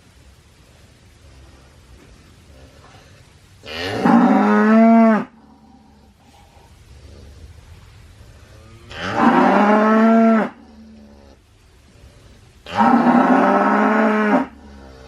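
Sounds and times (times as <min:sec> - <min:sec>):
cow mooing: 0:03.6 - 0:05.4, 0:08.9 - 0:11.3, 0:12.6 - 0:15.0.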